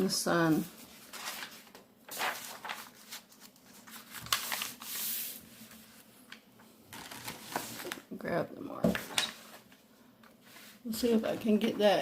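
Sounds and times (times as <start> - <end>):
paper rustling and sliding: 0.4 - 6.1, 6.9 - 8.0.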